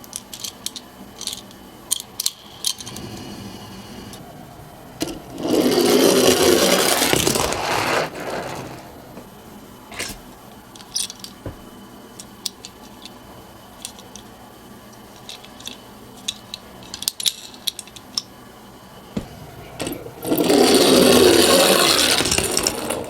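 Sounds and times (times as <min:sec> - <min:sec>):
toy cars clicking and tapping: 0:00.0 - 0:03.2, 0:12.2 - 0:13.2, 0:13.8 - 0:14.3, 0:15.2 - 0:18.3
toy car clattering down slope: 0:05.0 - 0:09.0, 0:19.8 - 0:23.0.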